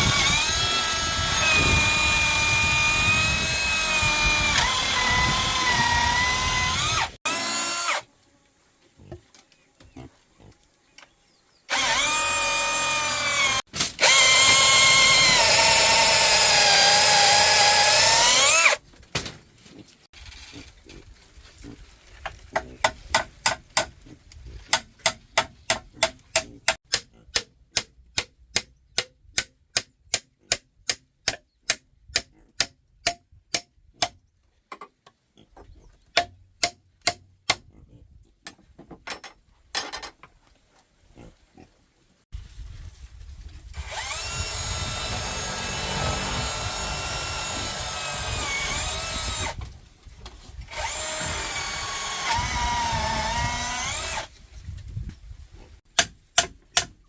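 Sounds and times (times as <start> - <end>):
electric drill whining: 0.0 - 8.1, 11.7 - 18.8, 43.8 - 49.6, 50.7 - 54.3
sharp evenly spaced knocks: 24.7 - 34.2.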